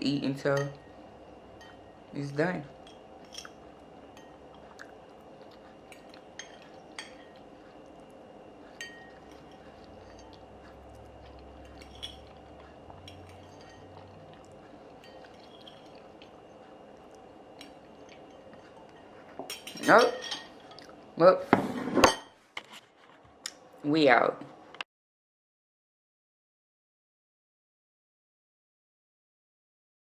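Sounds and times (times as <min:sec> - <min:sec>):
faint steady hum: 0:00.0 - 0:24.8
utensil clinking on dish: 0:01.6 - 0:01.9, 0:02.8 - 0:04.4, 0:05.9 - 0:07.4, 0:08.8 - 0:10.4, 0:11.6 - 0:12.4, 0:13.0 - 0:14.1, 0:15.0 - 0:16.1, 0:17.6 - 0:20.9.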